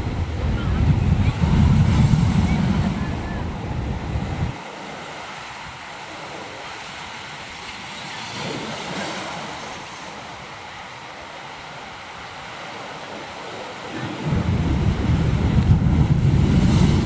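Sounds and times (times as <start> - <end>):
wind rumble on microphone: 0.0 - 4.6, 12.4 - 17.0
surf washing against rocks: 0.0 - 17.0.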